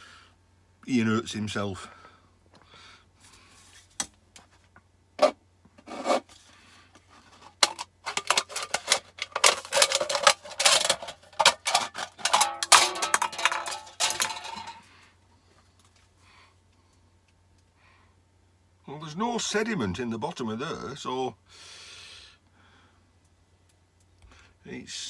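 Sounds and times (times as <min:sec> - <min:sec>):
metal can being cut: 0:05.2 - 0:06.4, 0:07.4 - 0:14.8
can clicks and crinkles: 0:05.2 - 0:14.9.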